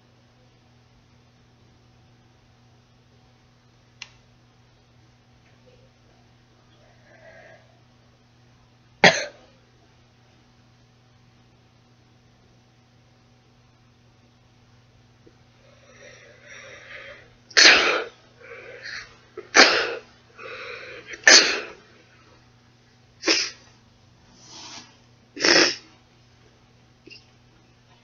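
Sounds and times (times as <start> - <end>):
gasping in-breaths: 15.6 - 17.3, 18.4 - 19.2, 20.4 - 21.2
person sneezing: 16.9 - 21.8, 23.2 - 23.7, 25.4 - 26.0.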